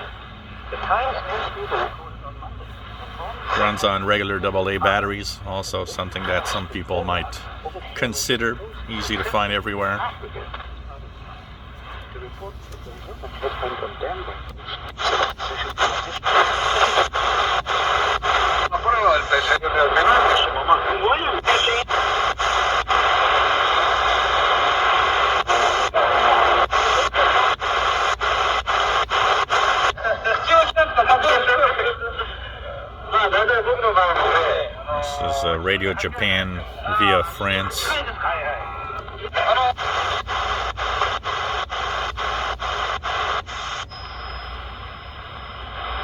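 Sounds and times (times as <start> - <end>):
shortwave radio static hiss: 0.0 - 46.0
thin high radio whistle: 43.0 - 46.0.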